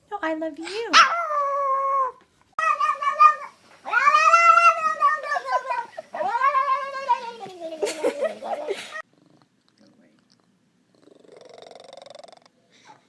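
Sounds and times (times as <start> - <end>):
cat yowling: 0.9 - 7.4.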